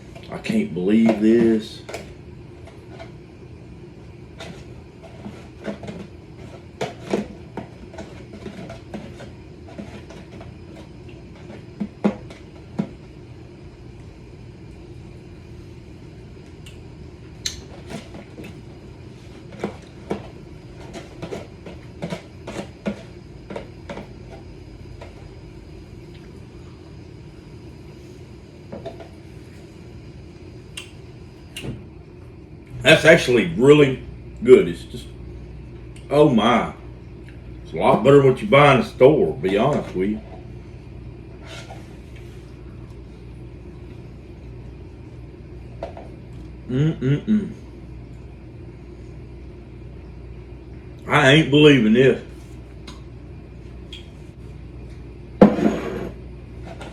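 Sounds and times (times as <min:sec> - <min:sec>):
low room hum: 0:00.0 - 0:56.9
spoon scraping a dish: 0:55.4 - 0:56.2.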